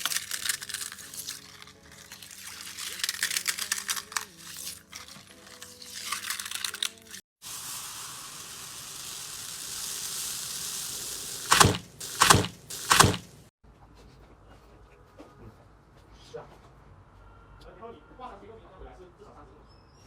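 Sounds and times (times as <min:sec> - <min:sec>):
faint background music: 0:00.0 - 0:07.2, 0:13.7 - 0:20.0
slime squishing: 0:00.0 - 0:07.2, 0:11.5 - 0:13.4
steady hiss: 0:07.4 - 0:13.5
slime crackling clicks: 0:11.4 - 0:13.3.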